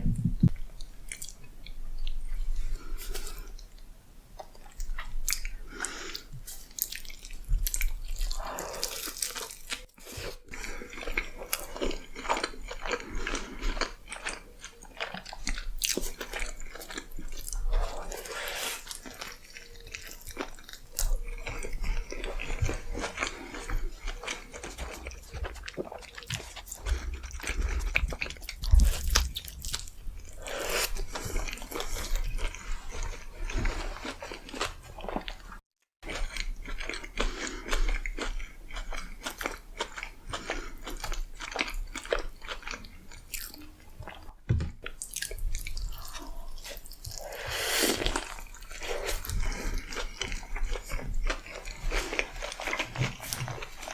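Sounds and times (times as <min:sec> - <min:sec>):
chewing crispy chicken: 0:00.8 - 0:53.9.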